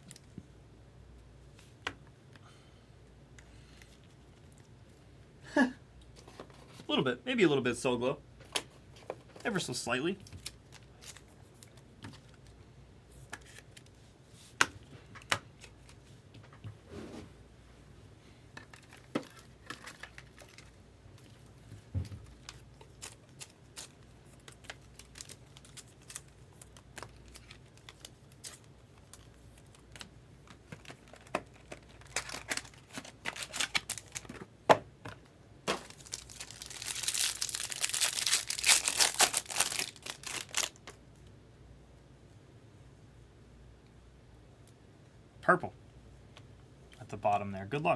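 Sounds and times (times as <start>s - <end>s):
wrapper crinkling and tearing: 18.7s - 21.5s, 22.3s - 34.4s, 35.7s - 41.0s.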